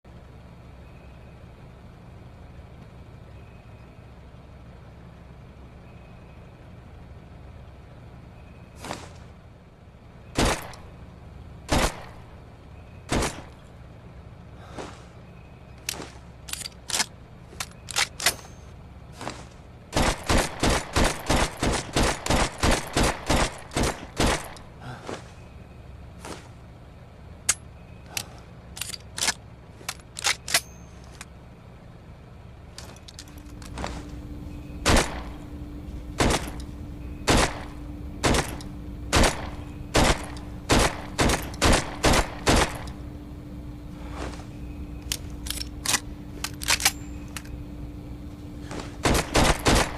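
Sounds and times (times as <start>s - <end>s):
steady low hum: 0.0s - 49.9s
pistol gunshots: 11.7s - 12.2s, 20.0s - 24.6s, 34.8s - 35.4s, 36.2s - 36.6s, 37.2s - 42.9s, 49.0s - 49.9s.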